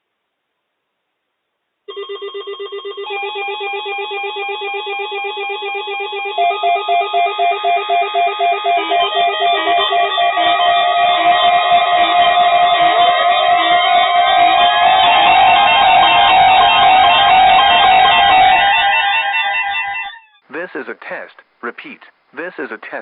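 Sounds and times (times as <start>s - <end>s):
loud pulsing alarm: 1.9s - 20.4s
warbling alarm tone: 1.9s - 20.4s
fast pulsing beeps: 3.2s - 19.8s.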